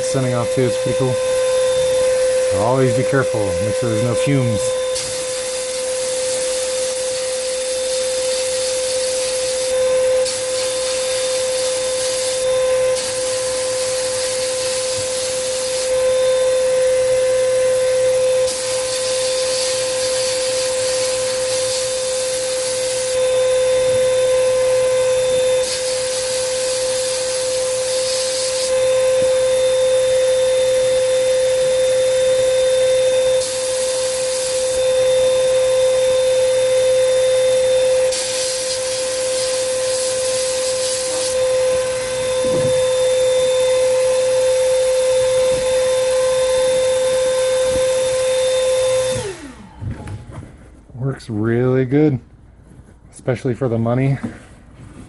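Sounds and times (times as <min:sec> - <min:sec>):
sandblast gun hissing: 0:00.0 - 0:16.0, 0:18.2 - 0:23.2, 0:25.5 - 0:29.7, 0:33.2 - 0:34.8, 0:38.0 - 0:49.5
steady hum: 0:00.0 - 0:25.7, 0:32.3 - 0:48.2.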